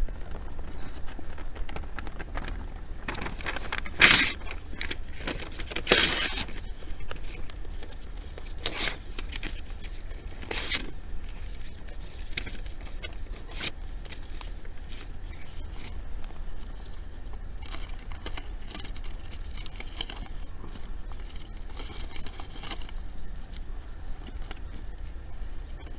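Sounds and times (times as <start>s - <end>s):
bonfire crackling and popping: 0.0s - 6.0s.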